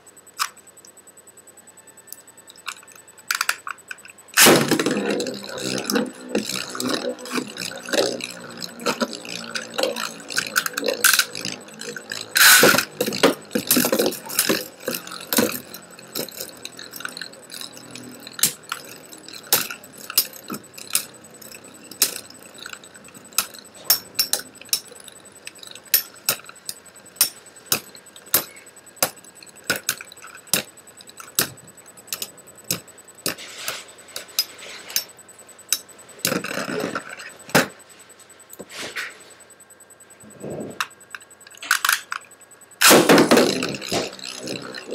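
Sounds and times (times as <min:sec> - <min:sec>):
spinning tops clacking: 0:02.6 - 0:35.1.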